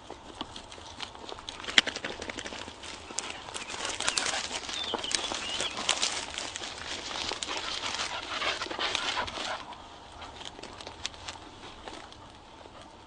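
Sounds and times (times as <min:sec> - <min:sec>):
rustling in vegetation: 0:00.0 - 0:13.0
dog panting: 0:02.9 - 0:10.9.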